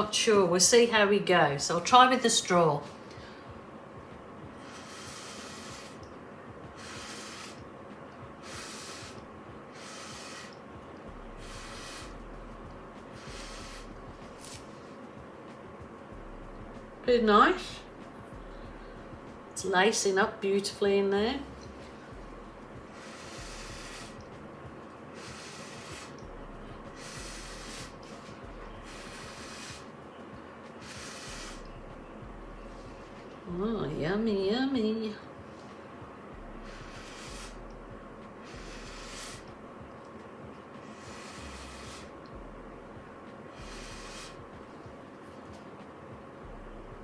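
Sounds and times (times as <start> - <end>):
breath blown through a straw: 4.6 - 6.0, 6.8 - 7.6, 8.4 - 9.2, 9.8 - 12.2, 13.2 - 14.6, 22.9 - 24.3, 25.2 - 29.9, 30.8 - 31.8, 36.6 - 37.7, 38.4 - 39.5, 40.8 - 42.2, 43.6 - 44.4.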